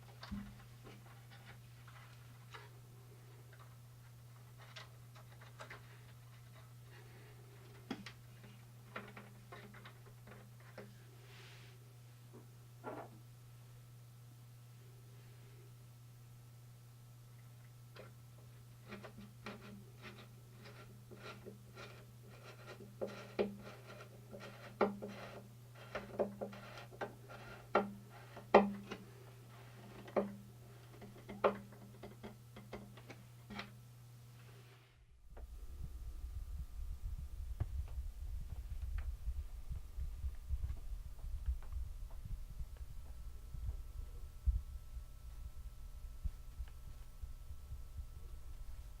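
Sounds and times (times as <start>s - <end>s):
steady low hum: 0.0s - 49.0s
low rumbling with faint crackles: 35.2s - 49.0s.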